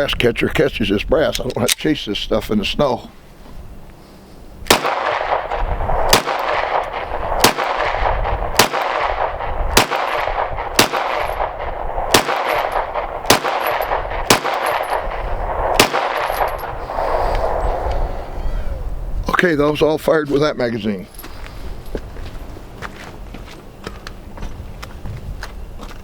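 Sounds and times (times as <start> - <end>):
pistol shots: 4.7 - 17.8.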